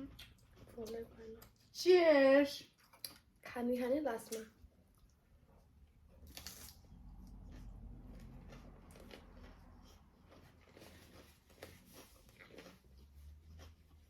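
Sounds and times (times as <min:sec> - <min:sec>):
quiet chewing with crunches: 0:00.0 - 0:01.8, 0:02.6 - 0:03.4, 0:04.2 - 0:14.0.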